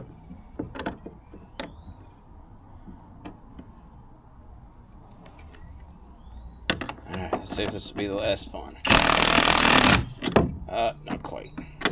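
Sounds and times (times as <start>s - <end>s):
hand tools clicking on metal hardware: 8.8s - 10.4s.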